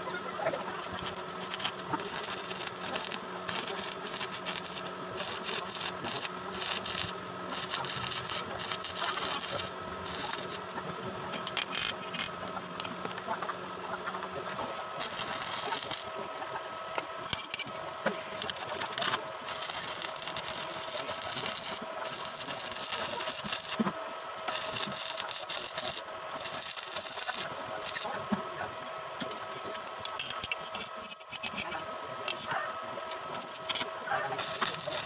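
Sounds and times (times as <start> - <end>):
compressor machine hum: 0.0 - 35.0.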